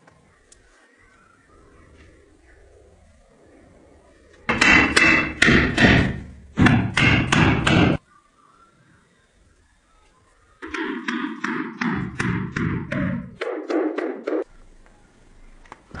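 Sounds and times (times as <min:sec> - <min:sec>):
hammer blows: 0:04.5 - 0:08.0, 0:10.6 - 0:14.5.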